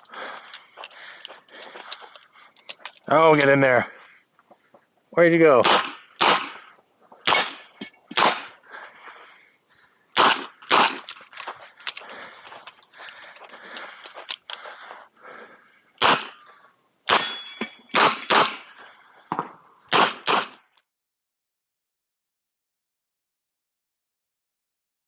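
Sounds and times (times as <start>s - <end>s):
rustling and clatter: 0.0s - 3.5s
revolver gunshots: 5.6s - 6.7s, 7.3s - 8.6s, 10.2s - 11.1s, 16.0s - 16.4s, 17.1s - 18.6s, 19.9s - 20.6s.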